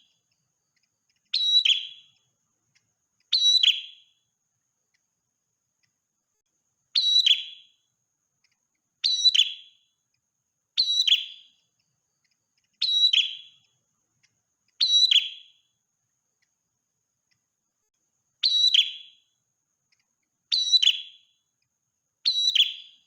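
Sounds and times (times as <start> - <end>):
bird call with falling trill: 1.2 - 2.2, 12.7 - 13.6, 14.8 - 15.6.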